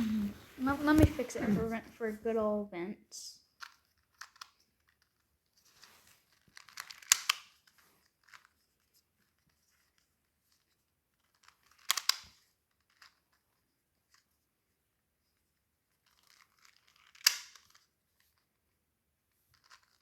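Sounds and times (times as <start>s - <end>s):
puzzle cube layers clicking: 6.3s - 8.6s, 11.3s - 13.3s, 16.1s - 17.8s.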